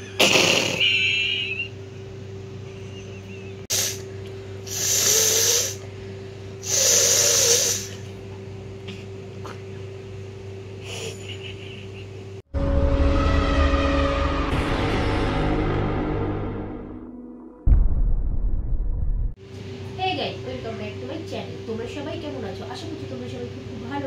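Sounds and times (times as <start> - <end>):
steady low hum: 0.0 - 12.5, 15.4 - 24.0
woman blowing her nose: 3.7 - 4.0, 4.7 - 5.8, 6.6 - 8.0.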